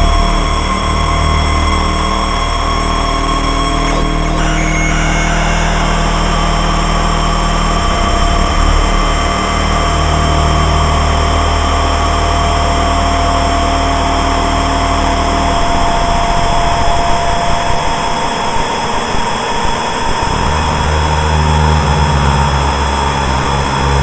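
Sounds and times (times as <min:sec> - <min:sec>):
low bass drone: 0:00.0 - 0:18.9, 0:20.2 - 0:24.0
synthesizer drone tones: 0:00.0 - 0:24.0.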